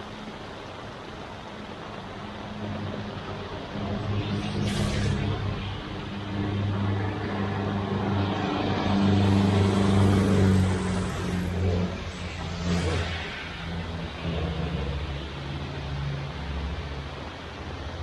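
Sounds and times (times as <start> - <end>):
vehicle passing by: 3.2 - 16.2.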